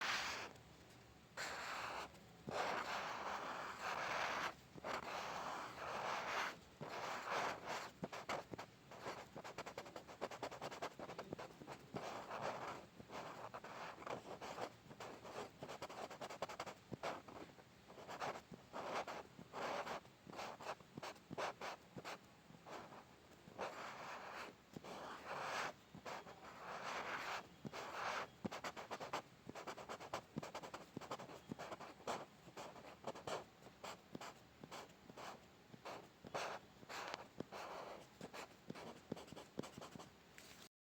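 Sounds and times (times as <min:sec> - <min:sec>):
pencil scratching on paper: 0:00.0 - 0:00.5, 0:01.4 - 0:40.0.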